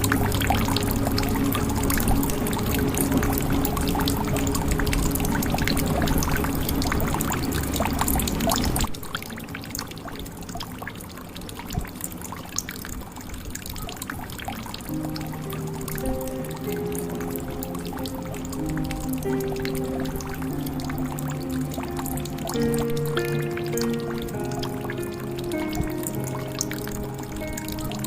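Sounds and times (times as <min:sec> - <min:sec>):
soft music with held tones: 0:00.0 - 0:28.0
water dripping: 0:00.0 - 0:28.0
water pouring into a jug: 0:00.0 - 0:28.0.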